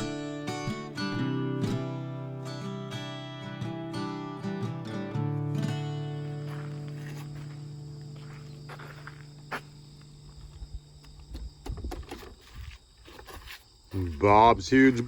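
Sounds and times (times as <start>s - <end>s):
acoustic guitar chord ringing: 0.0s - 9.9s.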